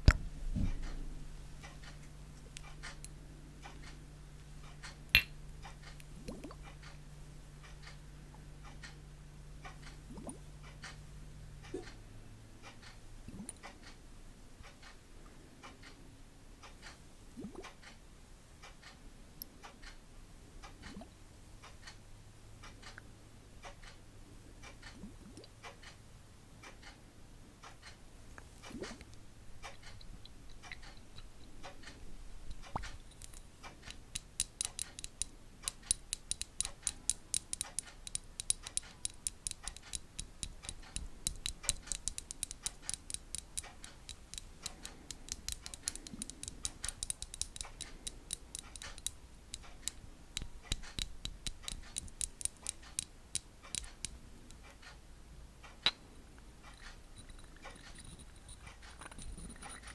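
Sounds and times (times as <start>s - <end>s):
light sharp clicking: 27.6s - 55.0s.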